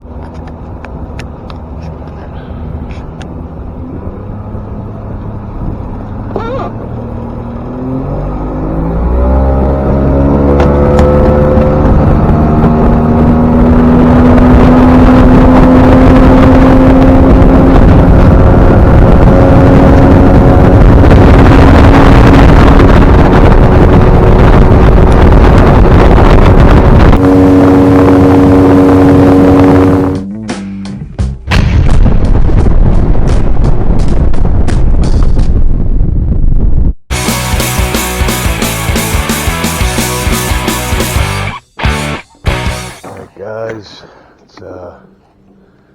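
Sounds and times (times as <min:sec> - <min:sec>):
boat outboard motor running: 0:00.0 - 0:07.9, 0:08.5 - 0:18.0, 0:20.0 - 0:30.2, 0:38.6 - 0:45.9.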